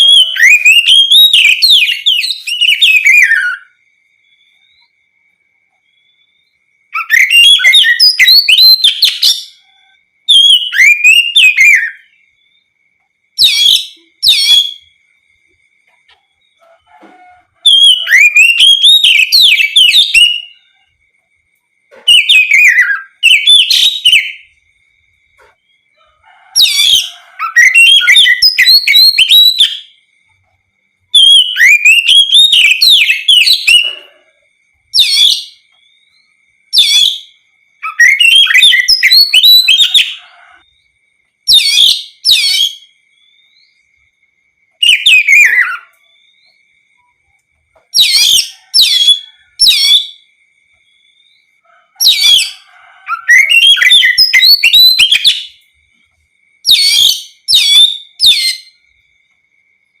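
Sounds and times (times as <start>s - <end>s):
magpie-robin singing: 0.0s - 3.8s, 6.9s - 12.2s, 13.4s - 15.0s, 17.6s - 20.7s, 21.9s - 24.6s, 26.6s - 30.0s, 31.1s - 34.2s, 34.9s - 40.2s, 41.5s - 43.0s, 44.8s - 46.0s, 47.8s - 50.3s, 52.0s - 55.6s, 56.6s - 58.8s.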